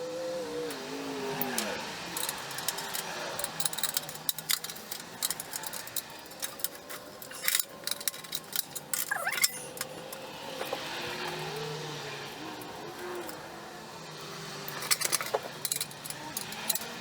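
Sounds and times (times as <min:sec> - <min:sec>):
short squeak: 0:09.1 - 0:09.7.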